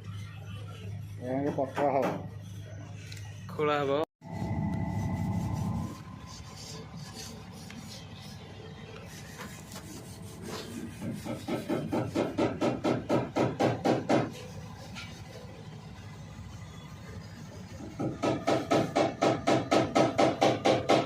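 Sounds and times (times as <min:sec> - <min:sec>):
tool rasping on wood: 0:05.2 - 0:14.4.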